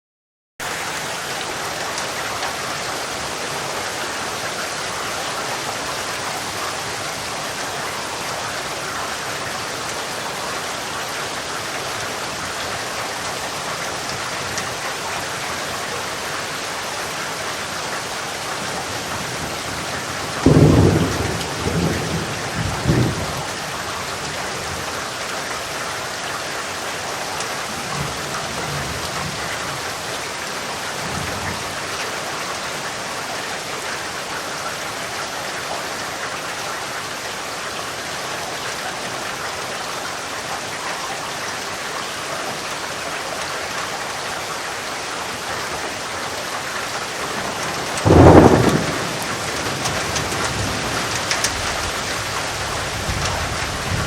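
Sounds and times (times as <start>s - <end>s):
steady rain falling: 0.6s - 54.0s
faint thunder rumble: 19.0s - 24.9s, 47.2s - 54.0s
loud thunderclap: 19.8s - 23.5s, 47.3s - 54.0s.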